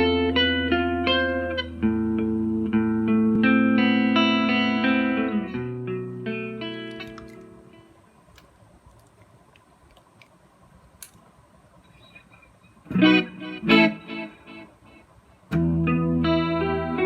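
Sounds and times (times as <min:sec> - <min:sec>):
electric guitar chords with chorus: 0:00.0 - 0:07.1, 0:12.9 - 0:14.7, 0:15.5 - 0:17.0.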